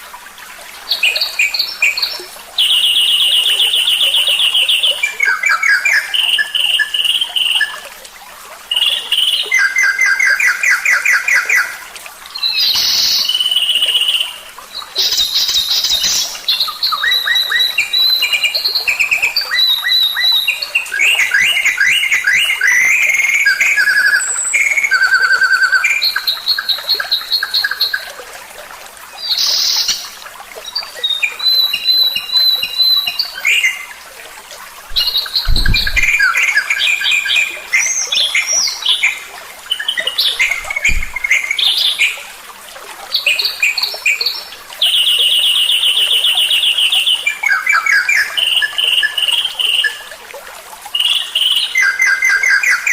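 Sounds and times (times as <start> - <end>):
songbird chirps and trills: 29.1 - 34.0
low thumps: 34.9 - 36.2, 40.5 - 41.2.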